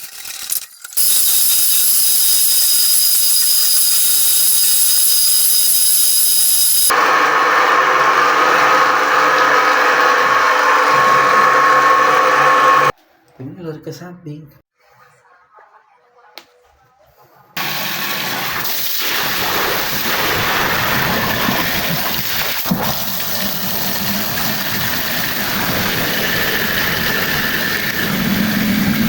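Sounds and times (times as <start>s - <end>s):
water running into sink: 1.0s - 7.0s, 17.6s - 27.8s.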